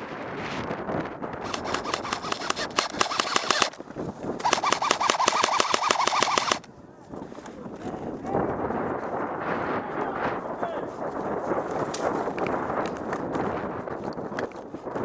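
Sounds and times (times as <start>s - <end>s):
airsoft rifle full-auto bursts: 1.4s - 3.8s, 4.4s - 6.7s.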